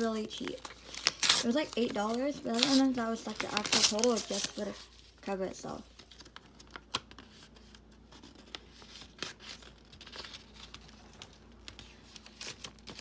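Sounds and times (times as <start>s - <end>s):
packaging rustling and crinkling: 0.0s - 5.2s
paper tearing: 0.7s - 4.8s.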